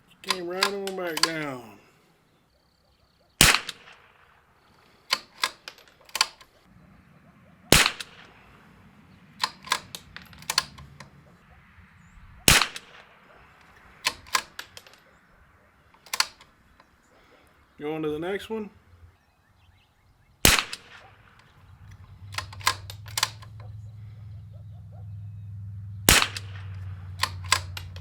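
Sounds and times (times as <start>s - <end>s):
rifle bolt clicks: 0.2s - 1.7s, 3.4s - 4.2s, 4.8s - 6.7s, 7.7s - 8.6s, 9.4s - 11.4s, 12.5s - 17.3s, 20.4s - 23.8s, 26.1s - 28.0s
rifle shots: 3.4s - 6.7s, 7.4s - 11.5s, 12.3s - 16.8s, 20.4s - 24.4s, 26.0s - 28.0s.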